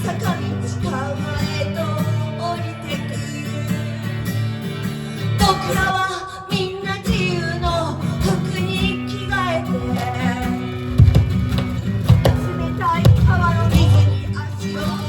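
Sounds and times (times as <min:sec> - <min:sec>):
live band music: 0:08.1 - 0:15.0.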